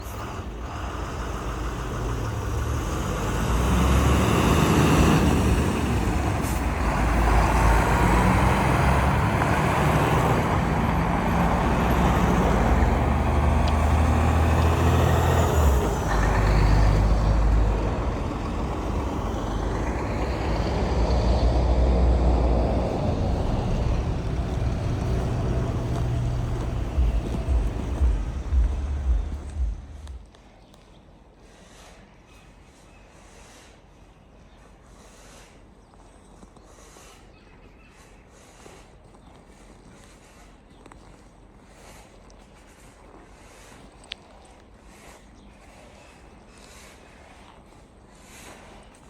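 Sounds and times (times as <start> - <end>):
vehicles driving past: 0.0 - 30.5.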